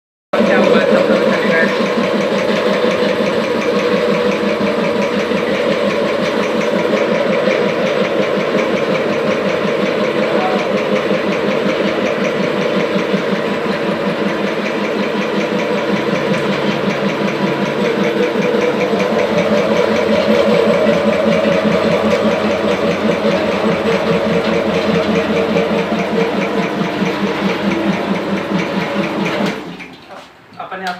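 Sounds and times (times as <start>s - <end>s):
piston air compressor running: 0.3s - 30.5s.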